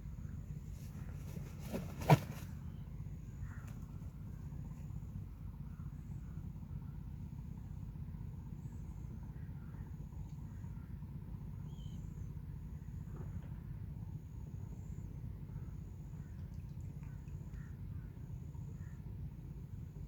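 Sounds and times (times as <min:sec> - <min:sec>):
faint small bird chirps: 0:08.4 - 0:13.5, 0:14.1 - 0:20.0.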